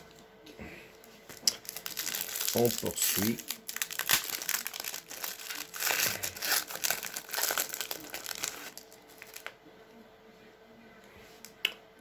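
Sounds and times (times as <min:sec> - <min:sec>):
foil wrapper crinkling: 0:01.3 - 0:09.6.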